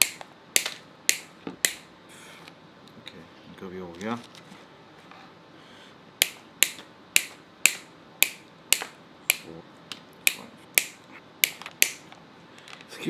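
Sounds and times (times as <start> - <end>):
cable cutter clicking: 0.0 - 1.8, 6.2 - 9.5, 10.3 - 12.0.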